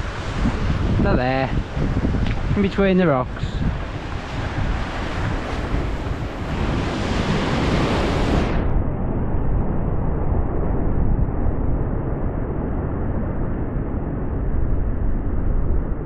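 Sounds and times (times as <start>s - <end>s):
surf breaking on rocks: 0.0s - 8.6s
wind buffeting microphone: 0.0s - 16.0s.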